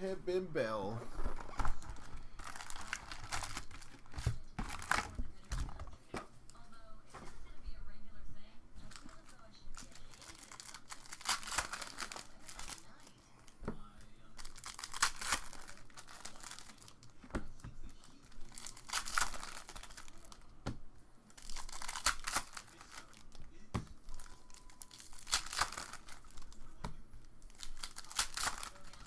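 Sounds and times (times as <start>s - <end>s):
foil wrappers tearing and crinkling: 1.1s - 5.8s, 8.8s - 13.6s, 14.3s - 17.2s, 17.8s - 20.5s, 21.3s - 26.8s, 27.4s - 29.0s.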